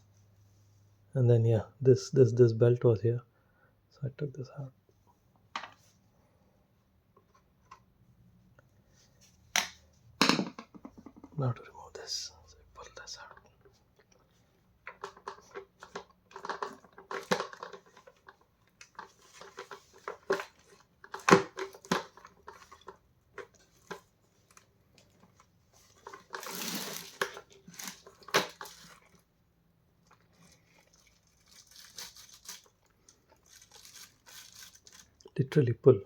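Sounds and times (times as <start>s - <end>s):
plastic clicking and knocking: 9.6s - 11.4s, 14.9s - 24.0s
rasping plastic scrape: 26.0s - 28.9s.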